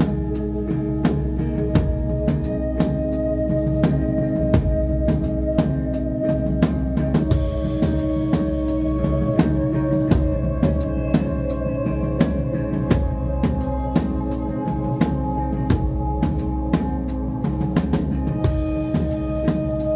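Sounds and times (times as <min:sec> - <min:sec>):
drum kit beat: 0:00.0 - 0:19.9
held low notes: 0:00.0 - 0:19.9.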